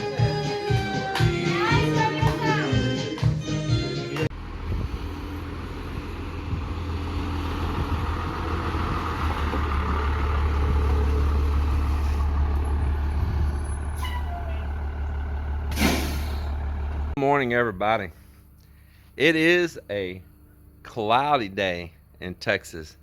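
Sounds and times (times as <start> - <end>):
truck engine running: 4.1 - 21.2
falling squeal: 13.4 - 14.8.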